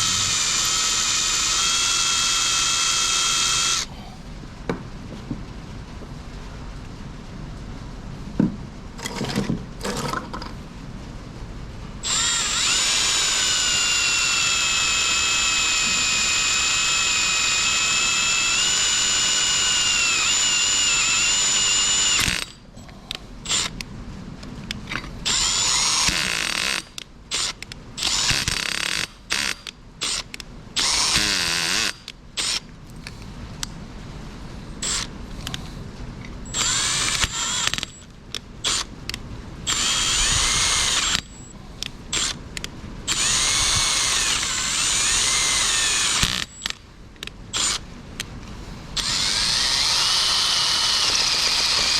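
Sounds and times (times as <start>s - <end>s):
electric drill boring into metal: 0.0s - 3.9s, 12.0s - 22.6s, 23.5s - 23.7s, 25.3s - 32.6s, 34.8s - 35.1s, 36.5s - 38.0s, 38.6s - 38.9s, 39.7s - 41.5s, 42.1s - 42.4s, 43.1s - 46.8s, 47.5s - 47.8s, 49.0s - 51.9s.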